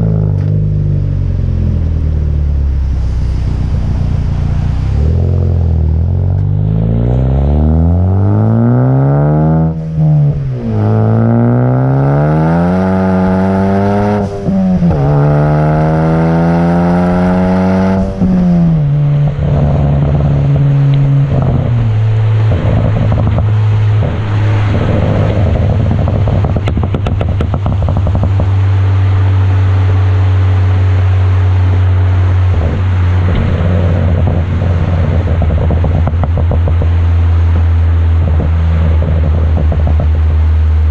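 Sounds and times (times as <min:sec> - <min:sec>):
car exhaust accelerating: 0:00.0 - 0:40.9
exhaust crackling and popping: 0:00.0 - 0:40.9.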